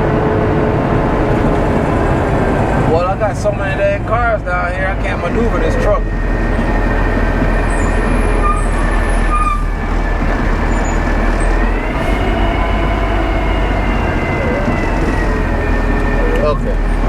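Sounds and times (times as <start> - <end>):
concrete mixer truck running: 0.0 - 17.0
mechanical whine: 5.4 - 16.9.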